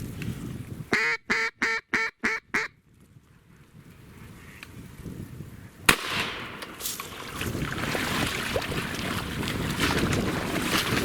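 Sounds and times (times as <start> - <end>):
duck quacking: 0.9 - 2.7.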